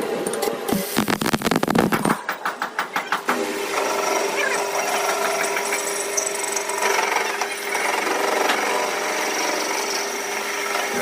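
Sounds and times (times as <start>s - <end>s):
power tool running: 3.6s - 11.0s.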